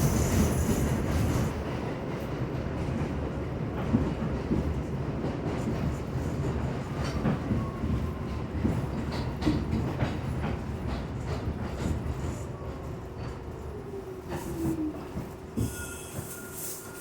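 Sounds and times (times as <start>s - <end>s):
subway train rumbling: 0.0s - 17.0s.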